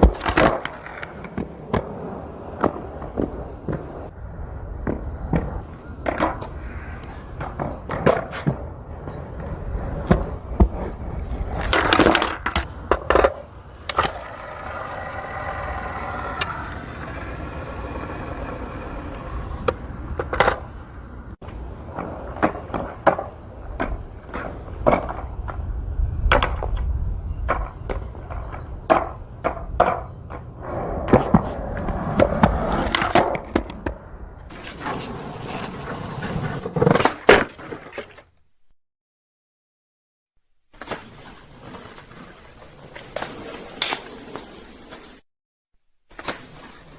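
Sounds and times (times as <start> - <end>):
skateboard clacks and knocks: 0.0 - 4.0, 7.4 - 20.7, 26.2 - 34.0
skateboard scraping: 0.0 - 38.4, 40.7 - 45.2, 46.1 - 46.9
skateboard wheels rolling: 0.0 - 38.4, 40.7 - 45.2, 46.1 - 46.9.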